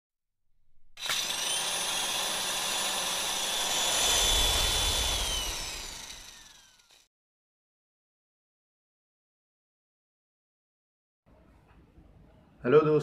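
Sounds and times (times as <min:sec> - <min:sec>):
jet-like whoosh with high whine: 0:03.6 - 0:06.8.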